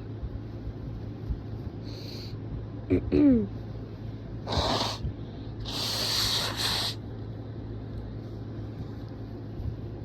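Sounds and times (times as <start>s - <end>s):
steady low hum: 0.0s - 10.0s
person blowing air through nose: 4.5s - 5.0s, 5.6s - 7.0s.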